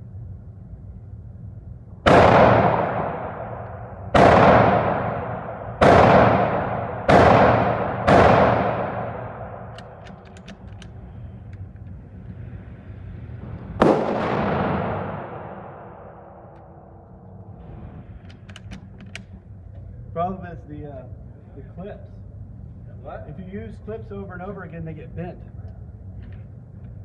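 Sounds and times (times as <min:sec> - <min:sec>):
rifle shots: 0:02.1 - 0:11.0, 0:13.7 - 0:17.2
light clicks: 0:09.7 - 0:12.0, 0:18.2 - 0:19.4.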